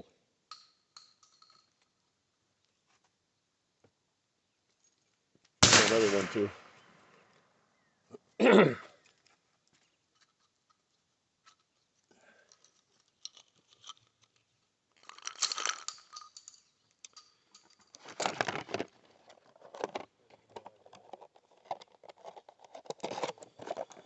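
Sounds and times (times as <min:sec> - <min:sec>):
rustling and crinkling handling: 0:09.0 - 0:24.0.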